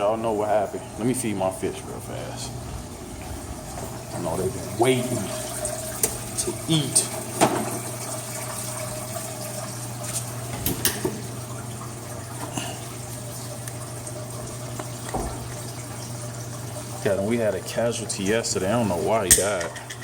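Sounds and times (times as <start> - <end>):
low hum: 0.0 - 7.2
trickling water: 0.0 - 20.0.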